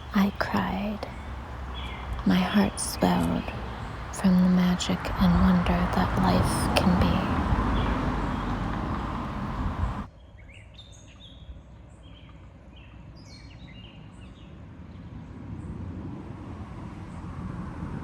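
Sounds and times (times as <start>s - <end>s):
small songbirds chirping: 0.0s - 10.1s.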